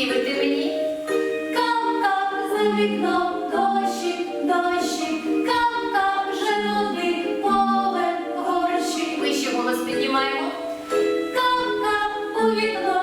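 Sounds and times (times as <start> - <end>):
voices singing a cappella: 1.5 - 13.0.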